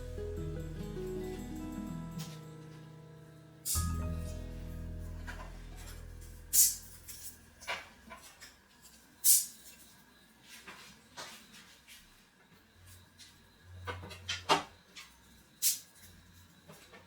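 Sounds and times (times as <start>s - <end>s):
low tone: 0.0s - 7.6s.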